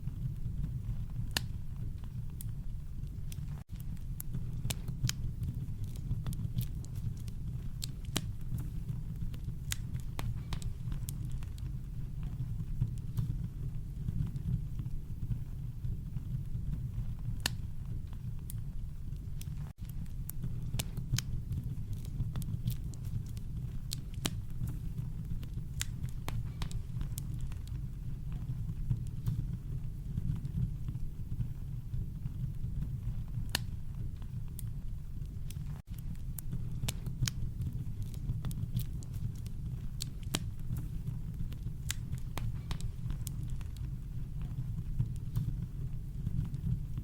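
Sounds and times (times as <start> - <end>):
campfire crackling: 0.0 - 47.0.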